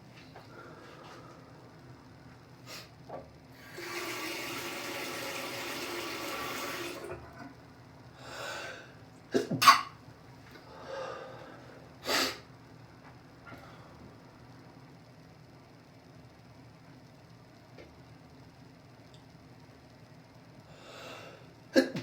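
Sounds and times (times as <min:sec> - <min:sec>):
sharp intake of breath: 0:10.7 - 0:12.5.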